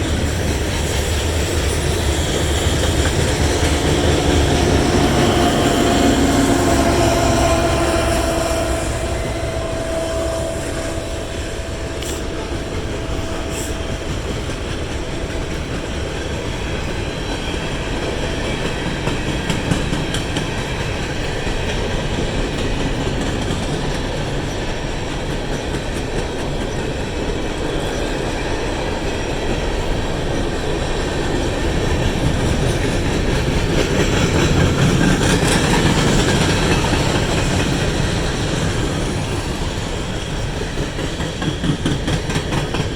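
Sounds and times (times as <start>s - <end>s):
train wheels clicking over rails: 0.0s - 42.9s
locomotive horn: 3.3s - 15.5s.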